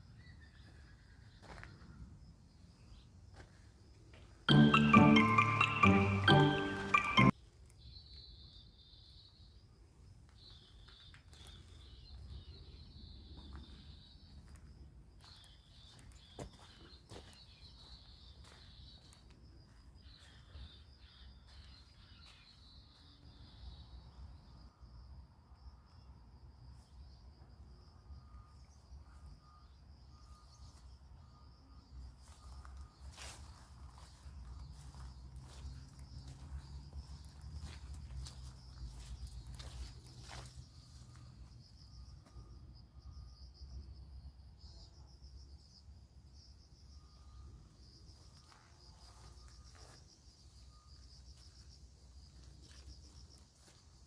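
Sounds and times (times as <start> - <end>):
crickets chirping: 8.2 - 54.0
high-pitched insect trill: 26.9 - 54.0.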